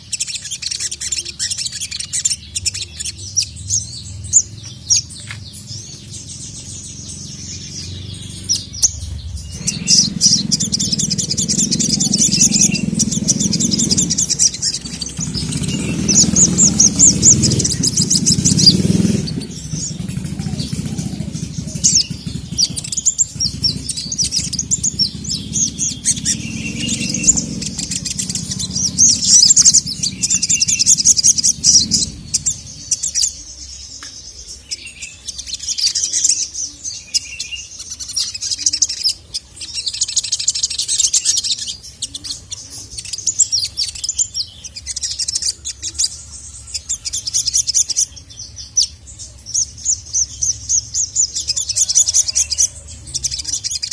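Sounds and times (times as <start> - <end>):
sunbird twittering song: 0.0 - 53.9
low hum: 3.2 - 33.5.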